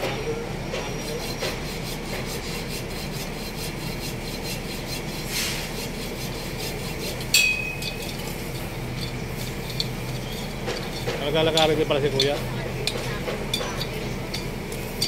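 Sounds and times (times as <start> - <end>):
metallic clink: 7.3 - 15.0.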